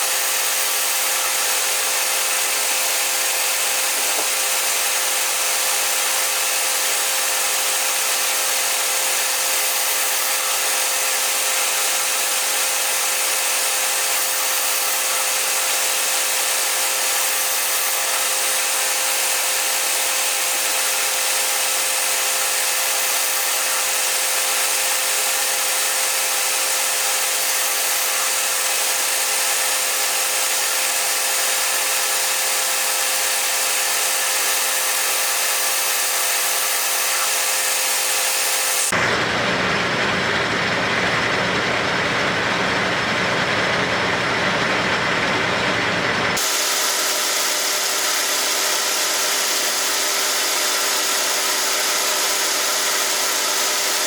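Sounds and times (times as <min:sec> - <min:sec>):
metal lathe running: 0:00.0 - 0:54.0.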